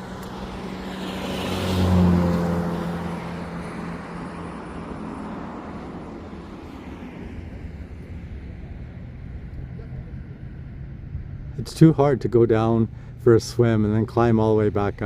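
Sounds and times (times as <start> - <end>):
car passing by: 0.0 - 11.5.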